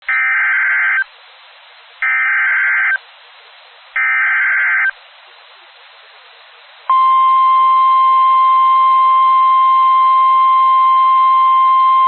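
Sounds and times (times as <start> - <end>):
faint hiss: 1.0 - 2.0, 3.0 - 4.0, 4.7 - 12.0.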